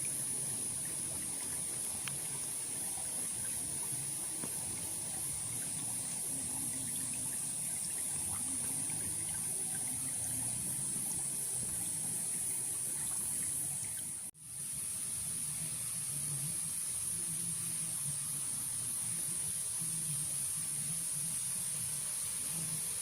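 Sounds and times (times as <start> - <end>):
insects droning: 0.0 - 23.0
stream trickling: 0.0 - 23.0.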